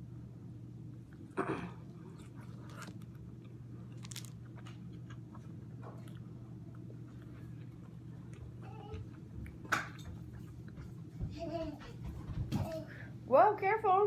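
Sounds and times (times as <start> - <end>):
steady low hum: 0.0 - 14.0
quiet chewing with clicks: 1.1 - 11.0.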